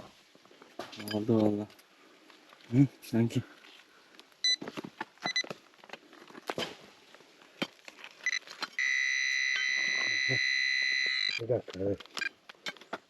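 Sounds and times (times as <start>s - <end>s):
knocks and scrapes of soil and stones: 0.0s - 13.0s
metal detector beeping: 5.2s - 5.5s, 8.2s - 11.5s.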